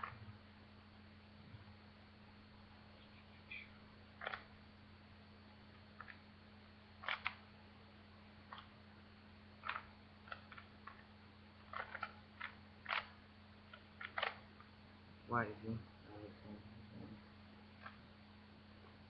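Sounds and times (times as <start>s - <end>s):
low steady hum: 0.0s - 19.0s
plastic cube clicking: 7.0s - 7.4s, 9.6s - 11.0s, 11.7s - 14.4s.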